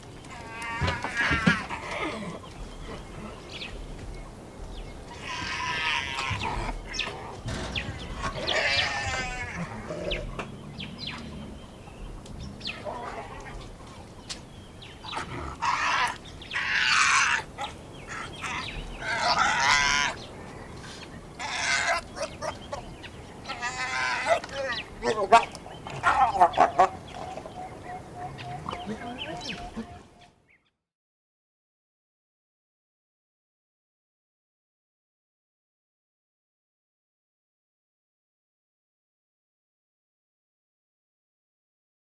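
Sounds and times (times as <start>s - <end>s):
hyenas giggling and squealing: 0.3s - 3.7s, 5.1s - 11.9s, 15.0s - 30.3s.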